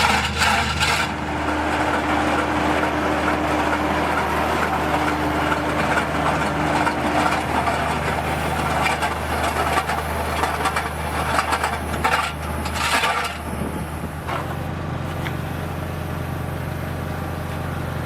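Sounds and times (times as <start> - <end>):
rough clattering and crunching: 0.0 - 15.4
engine idling: 0.0 - 18.0.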